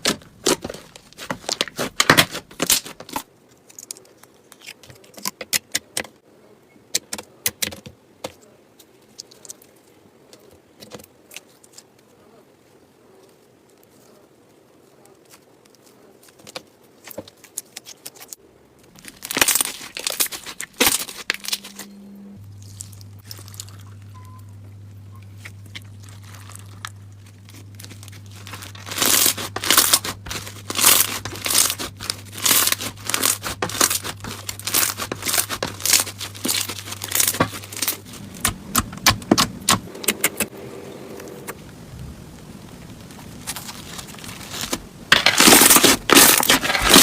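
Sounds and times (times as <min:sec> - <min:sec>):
sharp crackles and pops: 0:00.0 - 0:06.2, 0:13.2 - 0:47.0.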